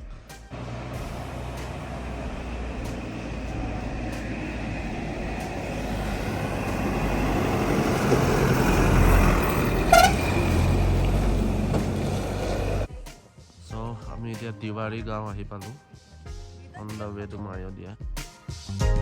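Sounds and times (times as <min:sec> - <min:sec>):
vehicle engine and road noise: 0:00.0 - 0:12.9
short horn toot: 0:09.8 - 0:10.5.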